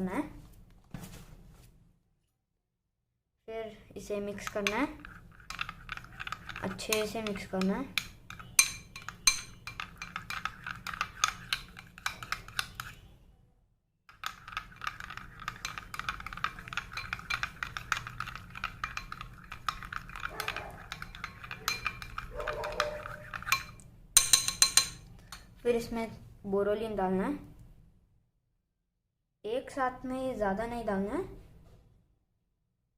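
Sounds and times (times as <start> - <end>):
spoon clinking in glass bowl: 4.5 - 13.0, 14.2 - 25.5.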